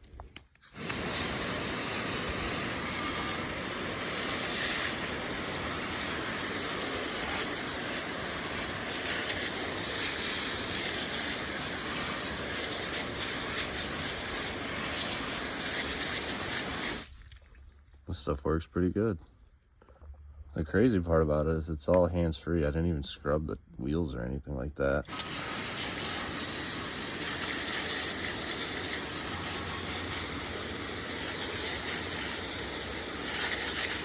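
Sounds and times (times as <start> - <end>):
water spray hissing on car wheels: 0.6 - 17.2, 25.1 - 34.0.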